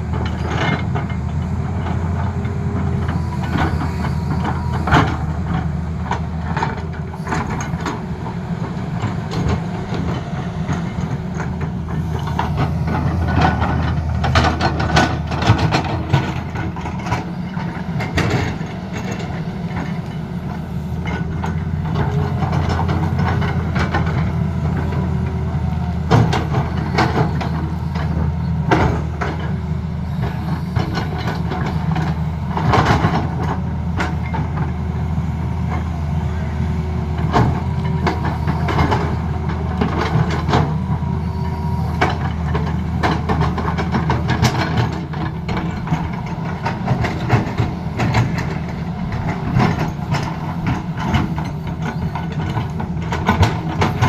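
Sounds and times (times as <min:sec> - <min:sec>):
excavator diesel engine running: 0:00.0 - 0:54.0
metallic clanks and knocks: 0:37.2 - 0:54.0.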